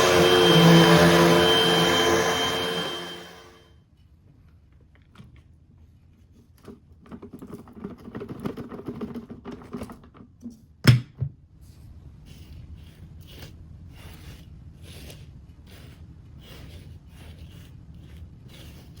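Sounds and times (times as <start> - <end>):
vacuum cleaner motor winding down: 0.0 - 3.5
clicking and rattling handling: 6.6 - 10.3.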